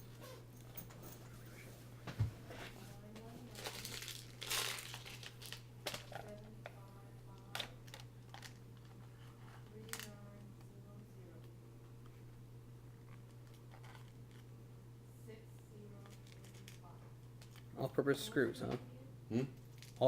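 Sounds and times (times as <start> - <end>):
plastic packaging crinkling: 3.5 - 6.4, 7.8 - 8.9, 16.0 - 16.8
small clicks and knocks of parts: 5.0 - 9.0, 9.6 - 10.2, 19.7 - 20.0.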